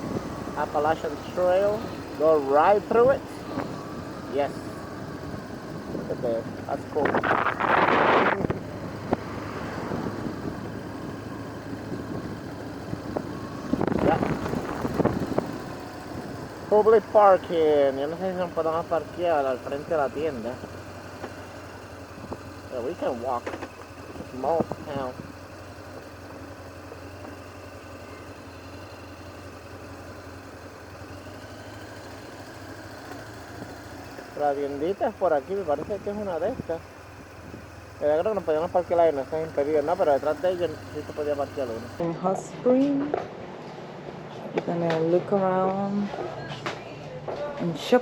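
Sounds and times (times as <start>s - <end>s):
motorcycle engine drone: 0.0s - 42.0s
wind rush on microphone: 5.3s - 11.2s, 11.8s - 16.6s.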